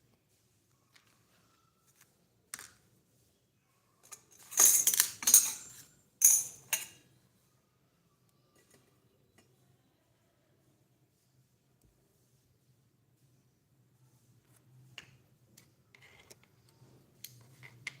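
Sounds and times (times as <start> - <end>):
small metal pieces clinking: 4.1 - 7.0.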